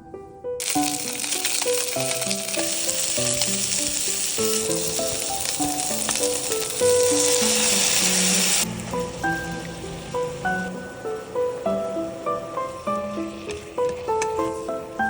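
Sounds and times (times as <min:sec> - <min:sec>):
background music: 0:00.0 - 0:15.0
food sizzling in oil: 0:00.6 - 0:08.7.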